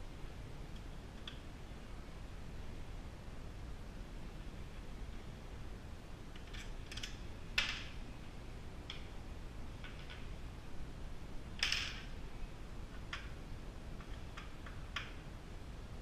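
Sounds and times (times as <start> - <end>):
steady low hum: 0.0 - 16.0
small parts and tools clicking: 6.3 - 7.9.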